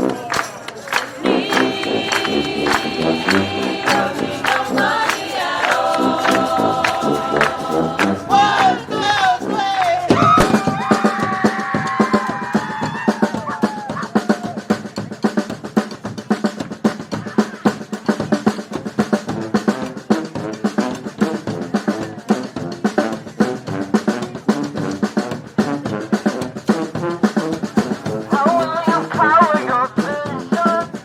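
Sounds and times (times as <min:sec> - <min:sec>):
brass horns holding notes: 0:00.0 - 0:11.2
snare and bass drum break: 0:01.4 - 0:19.9.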